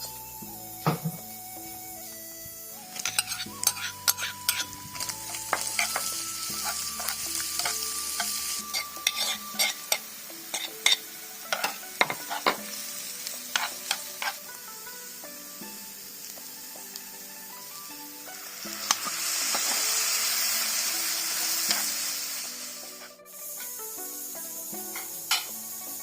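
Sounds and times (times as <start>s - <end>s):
meat sizzling in a pan: 0.0s - 26.0s
spatula scraping a pan: 2.9s - 14.6s, 21.6s - 22.0s, 23.0s - 23.8s, 24.9s - 25.6s.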